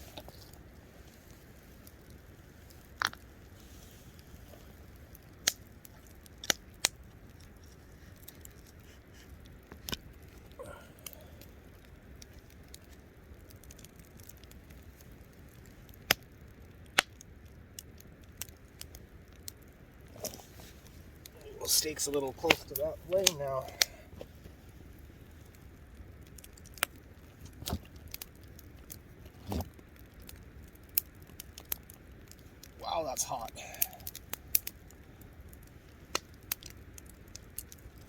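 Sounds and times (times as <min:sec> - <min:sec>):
burning wood popping: 0:00.0 - 0:38.0
campfire crackling: 0:00.0 - 0:38.0.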